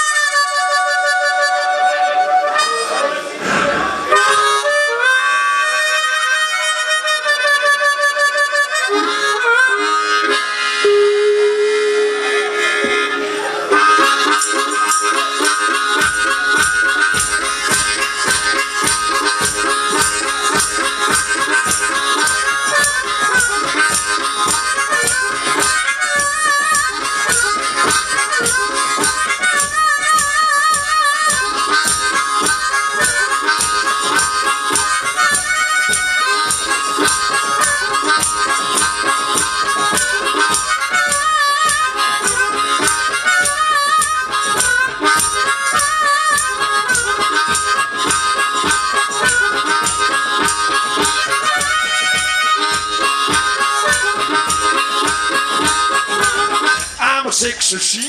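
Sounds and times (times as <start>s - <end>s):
harmonica melody: 0.0s - 58.0s
steady driving beat: 15.4s - 58.0s.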